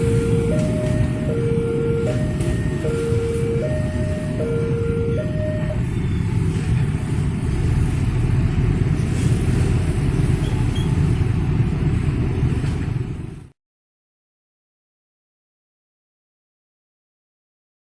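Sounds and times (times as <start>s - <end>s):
rumble of passing vehicles: 0.0s - 13.6s.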